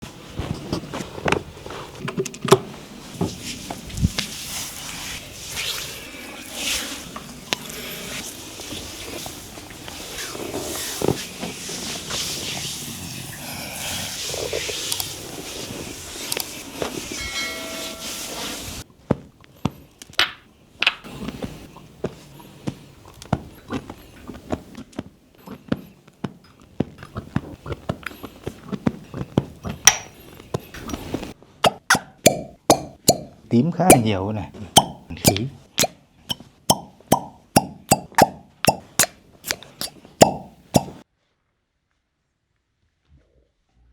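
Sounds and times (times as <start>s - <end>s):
steady hiss: 3.2s - 18.8s.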